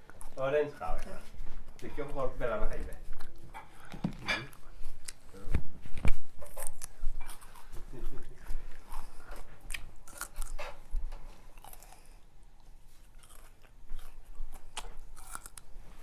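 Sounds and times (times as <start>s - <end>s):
chewing and biting: 2.7s - 5.4s, 6.0s - 16.0s.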